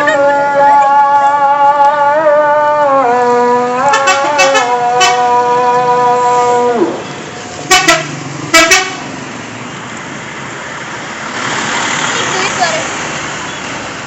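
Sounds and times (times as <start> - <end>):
multi-tone bus horn: 0.0 - 9.1
road noise: 0.0 - 14.0.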